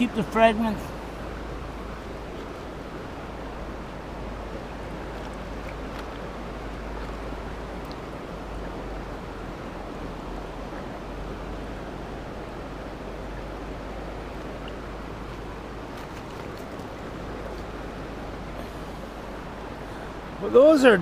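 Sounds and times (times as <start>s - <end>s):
river flowing: 0.0s - 21.0s.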